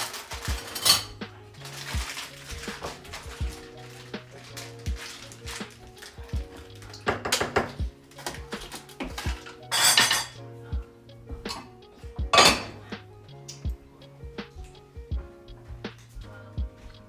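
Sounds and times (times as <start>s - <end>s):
cutlery clinking against pots: 0.0s - 10.4s, 11.5s - 11.7s, 12.3s - 12.8s
background music: 0.0s - 17.0s.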